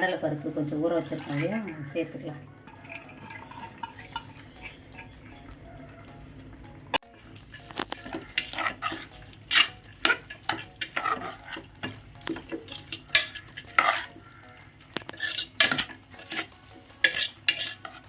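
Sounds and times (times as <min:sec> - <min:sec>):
metal spoon scraping steel pot: 0:02.6 - 0:06.1, 0:07.4 - 0:18.0.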